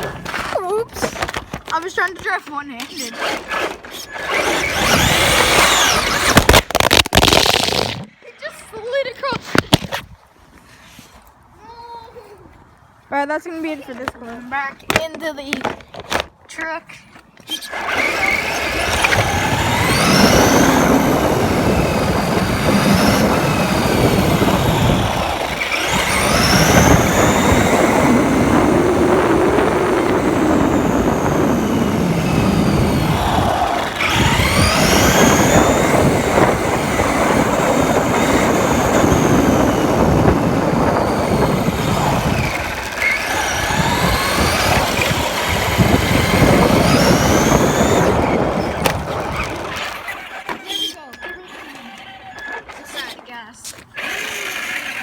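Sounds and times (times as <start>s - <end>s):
tyres and chassis rattling: 0.0s - 8.1s, 17.4s - 55.0s
electric motor whining: 2.8s - 8.1s, 17.5s - 52.8s, 53.8s - 55.0s.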